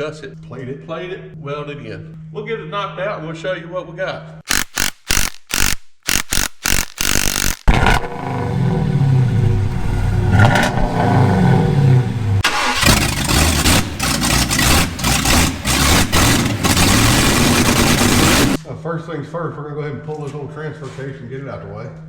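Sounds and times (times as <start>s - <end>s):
engine revving: 4.8s - 18.6s.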